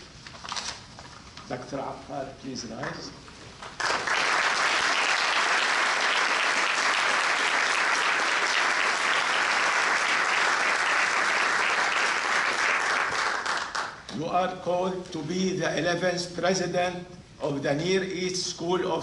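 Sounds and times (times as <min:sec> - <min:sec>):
audience applauding: 0:03.6 - 0:14.0.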